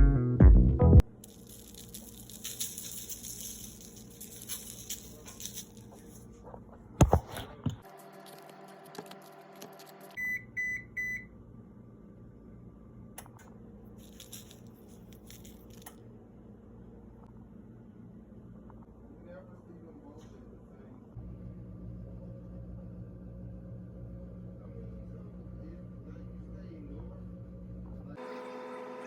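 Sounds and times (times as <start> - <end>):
sharp clatter: 1.2 - 6.3
appliance beeper short beeps: 10.2 - 11.3
steady low hum: 10.2 - 28.2.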